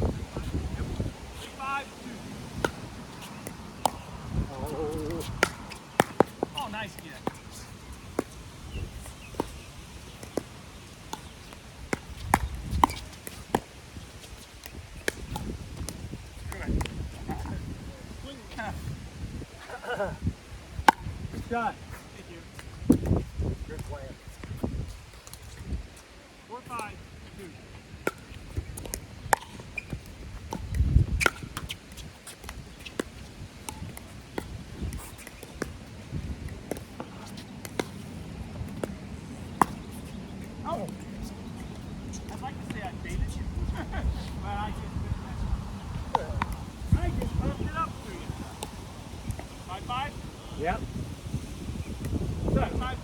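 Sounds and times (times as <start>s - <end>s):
wind rumble on microphone: 0.0s - 10.9s, 11.7s - 26.0s, 28.2s - 36.9s, 40.6s - 53.0s
paddles hitting plastic ball: 2.5s - 8.4s.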